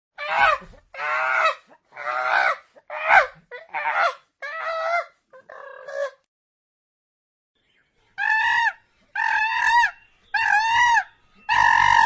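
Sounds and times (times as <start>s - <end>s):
bird giving harsh calls: 8.2s - 12.0s.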